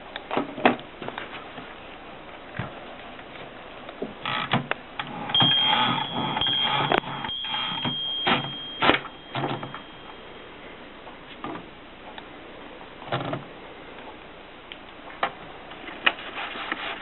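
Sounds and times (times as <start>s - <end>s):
thin high ringing tone: 5.3s - 12.8s.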